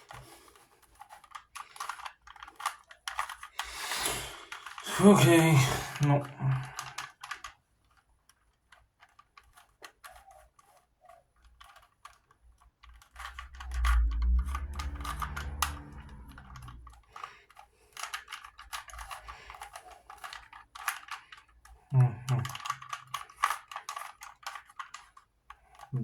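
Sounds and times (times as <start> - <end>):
puzzle cube twisting clicks: 0.8 - 4.9, 8.4 - 25.9
low hum: 13.2 - 17.0.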